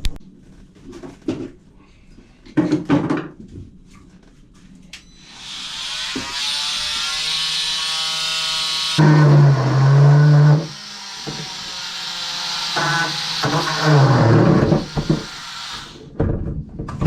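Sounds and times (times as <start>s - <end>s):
power tool cutting drain: 5.2s - 16.1s
power tool motor whining: 5.2s - 16.1s.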